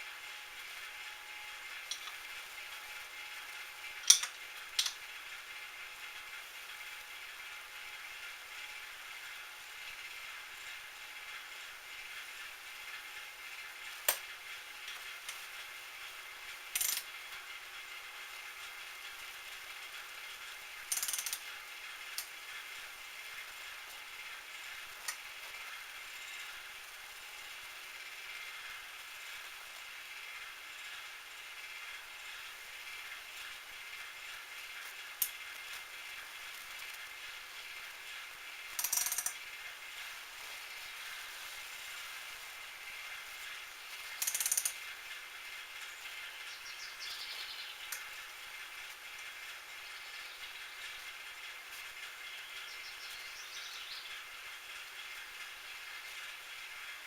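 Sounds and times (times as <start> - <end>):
metal lathe gear whine: 26.0 - 27.4.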